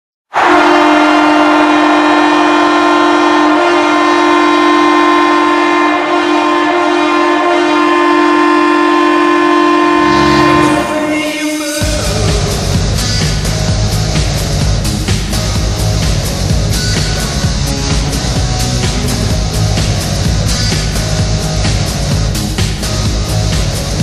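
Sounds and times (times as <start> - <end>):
arena goal horn blast: 0.3 - 12.2
drums: 11.7 - 24.0.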